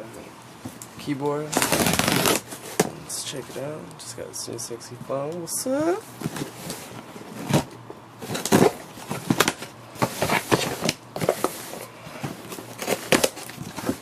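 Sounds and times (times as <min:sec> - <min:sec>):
cardboard and wrapping rustling: 0:01.4 - 0:03.7, 0:05.8 - 0:14.0.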